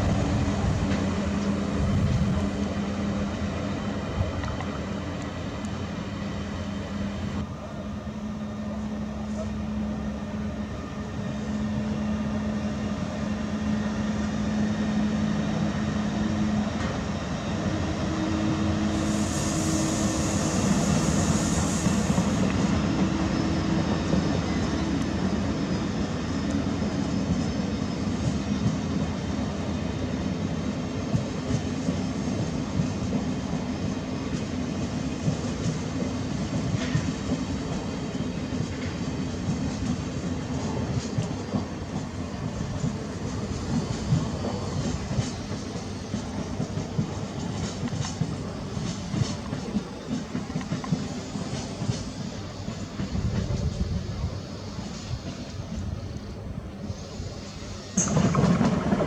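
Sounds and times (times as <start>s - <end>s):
train humming: 0.0s - 59.0s
high hiss: 12.8s - 59.0s.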